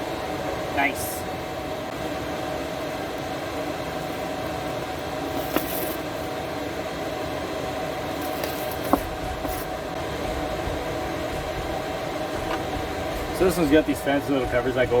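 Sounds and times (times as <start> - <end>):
mechanical hum: 0.0 - 15.0.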